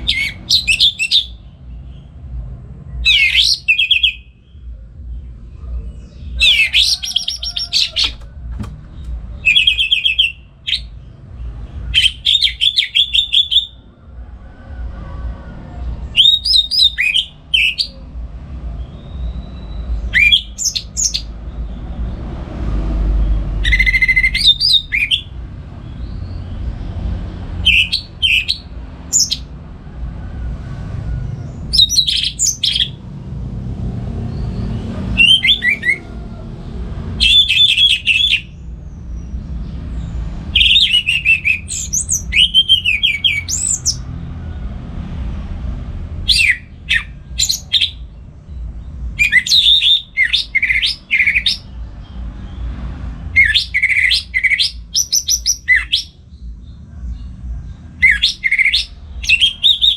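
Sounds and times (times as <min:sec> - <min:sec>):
thrush singing whistled phrases: 0:00.0 - 0:01.4, 0:03.0 - 0:04.5, 0:06.4 - 0:08.2, 0:09.4 - 0:10.9, 0:11.9 - 0:13.9, 0:16.1 - 0:18.0, 0:18.9 - 0:21.3, 0:23.6 - 0:25.4, 0:27.6 - 0:29.5, 0:31.7 - 0:33.0, 0:35.2 - 0:36.0, 0:37.2 - 0:38.6, 0:40.5 - 0:44.0, 0:46.3 - 0:48.1, 0:49.2 - 0:51.8, 0:53.3 - 0:56.2, 0:58.0 - 0:59.9
steady low hum: 0:04.2 - 0:12.8.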